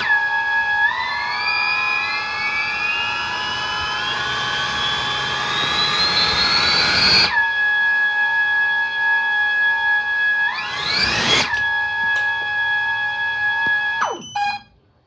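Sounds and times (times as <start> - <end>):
electric ducted fans whining: 0.0 - 7.4.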